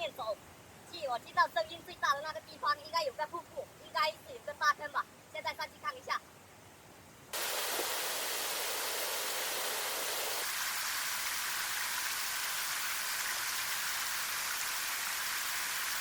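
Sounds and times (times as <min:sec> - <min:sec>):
waterfall rushing: 0:07.4 - 0:16.0.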